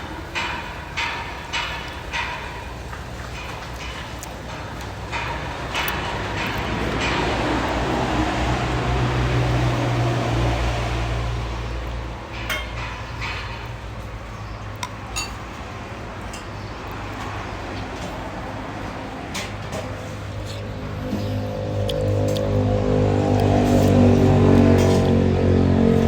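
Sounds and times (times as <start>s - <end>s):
dishes and cutlery clinking: 12.4s - 13.8s, 14.8s - 15.7s.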